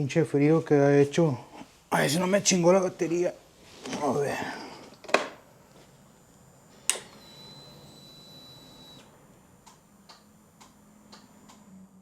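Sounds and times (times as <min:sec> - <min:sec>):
faint steady whine: 0:00.1 - 0:12.0
soft repeated clicks: 0:08.9 - 0:11.7.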